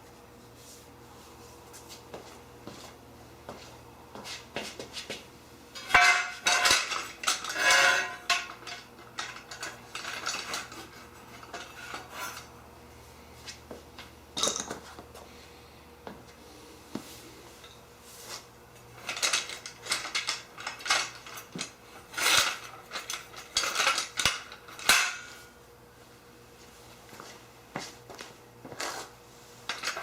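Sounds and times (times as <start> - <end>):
metal connectors clinking and scraping: 5.8 - 12.5, 18.8 - 25.5, 29.7 - 30.0.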